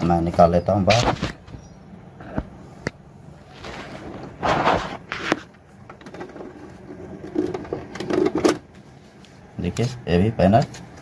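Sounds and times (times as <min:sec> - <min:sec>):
plastic scraping and rubbing: 0:03.4 - 0:08.9.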